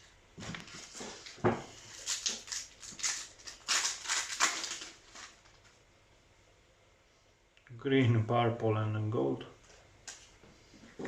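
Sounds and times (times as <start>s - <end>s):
foil card pack crinkling: 0.5s - 5.8s.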